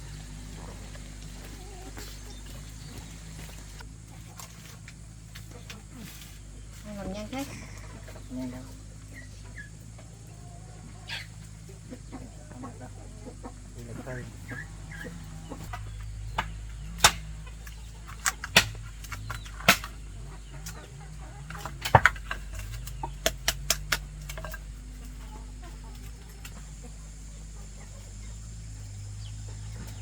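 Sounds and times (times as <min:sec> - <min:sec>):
chicken clucking: 0:00.0 - 0:30.0
sharp knocks: 0:18.2 - 0:20.0.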